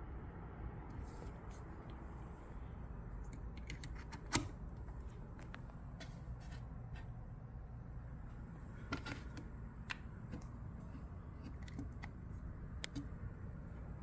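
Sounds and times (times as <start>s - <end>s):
low steady hum: 0.0s - 14.0s
cables clicking and tapping: 8.9s - 12.2s, 12.8s - 13.2s.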